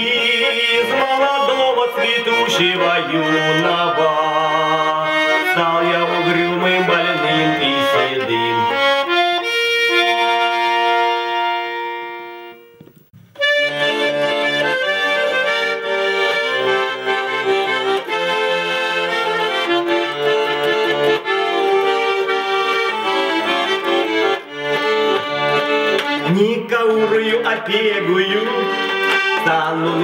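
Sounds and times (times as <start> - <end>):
button accordion playing: 0.0 - 30.0.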